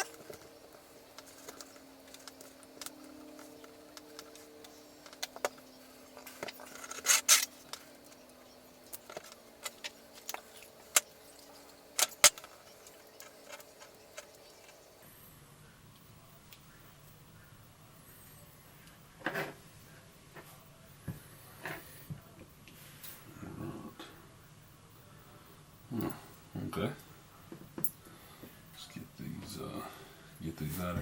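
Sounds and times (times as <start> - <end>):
metal lock parts clicking: 6.2 - 14.8.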